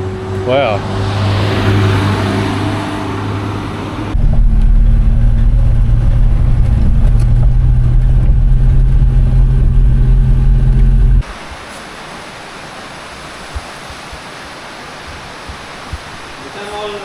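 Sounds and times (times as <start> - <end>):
vehicle engine droning: 0.0 - 11.3.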